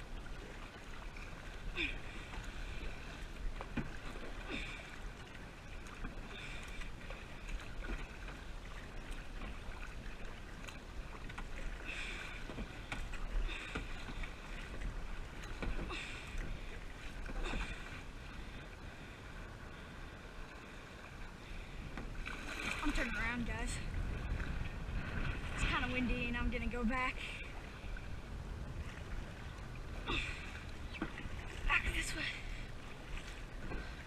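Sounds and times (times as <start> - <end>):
paddle splashing water: 0.0 - 34.0
wind on microphone: 21.6 - 30.0.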